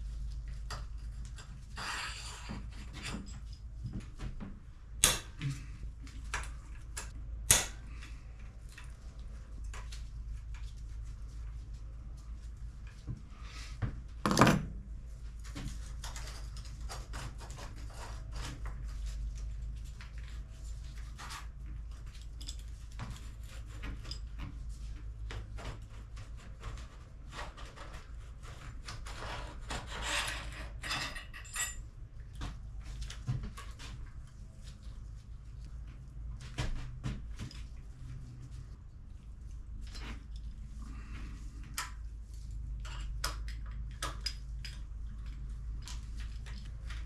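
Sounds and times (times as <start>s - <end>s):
steady low hum: 0.0s - 27.3s
metal parts and tools clinking: 30.5s - 31.8s.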